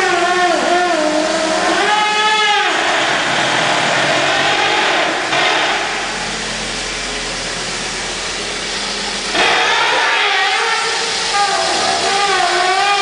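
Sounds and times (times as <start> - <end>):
car engine running: 0.0 - 13.0
power steering rushing noise: 0.0 - 13.0.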